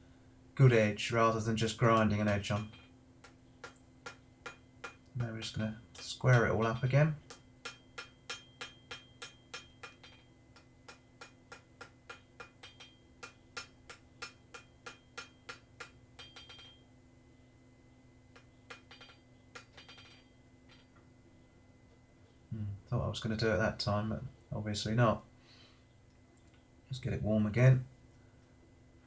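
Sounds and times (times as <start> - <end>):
hammer striking steel on anvil: 1.6 - 16.9, 18.3 - 21.0.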